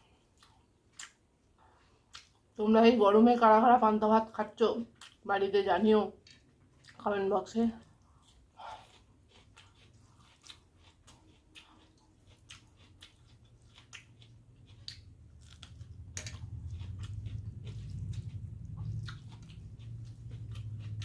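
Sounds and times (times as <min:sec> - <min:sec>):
wet chewing mouth clicks: 0:00.4 - 0:01.2, 0:02.1 - 0:02.4, 0:07.8 - 0:21.0
low hum: 0:15.0 - 0:21.0.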